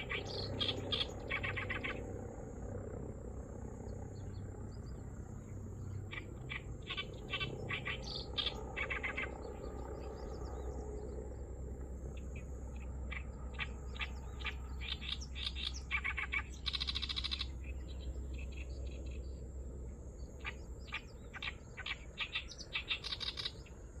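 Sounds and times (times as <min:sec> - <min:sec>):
reed warbler calling: 0:00.0 - 0:02.6, 0:03.6 - 0:24.0.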